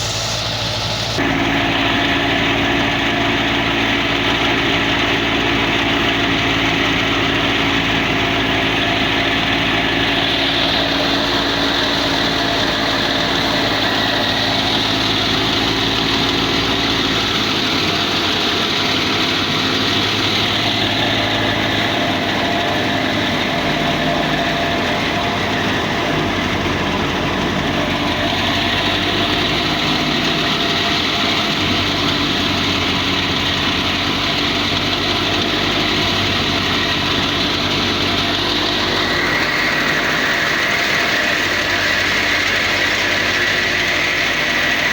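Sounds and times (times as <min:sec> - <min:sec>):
rushing hiss: 0:00.0 - 0:01.4
thresher engine drone: 0:00.0 - 0:44.9.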